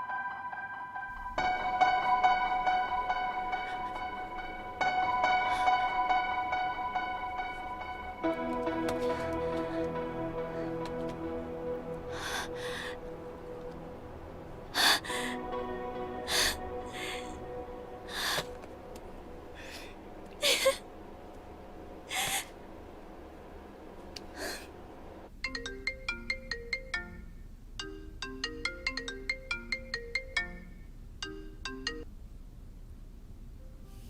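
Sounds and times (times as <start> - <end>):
soft background music: 0.0 - 20.7, 33.5 - 34.0
phone ringtone melody: 0.1 - 13.9, 25.4 - 32.1.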